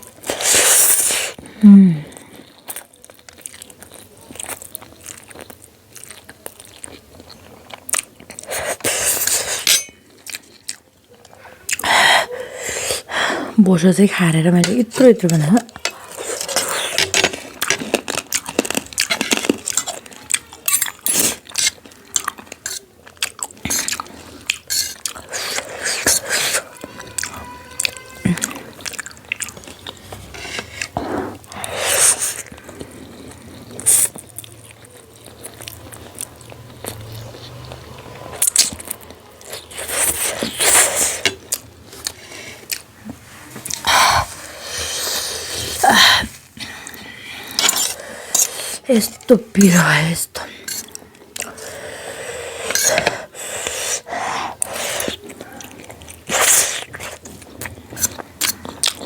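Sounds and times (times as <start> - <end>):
wet chewing and biting: 15.7 - 49.3, 50.5 - 59.0.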